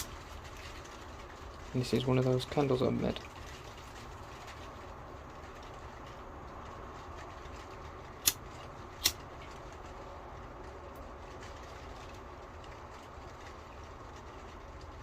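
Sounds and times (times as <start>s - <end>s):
low rumble and hiss: 0.0s - 15.0s.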